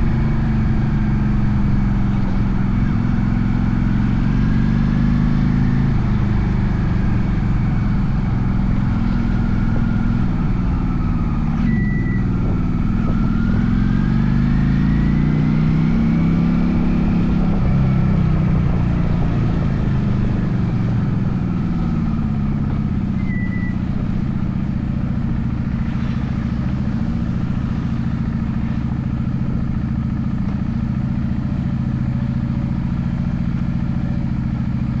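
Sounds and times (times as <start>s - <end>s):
motorcycle engine running: 0.0s - 35.0s
short high beeps: 11.6s - 12.3s, 23.2s - 23.8s.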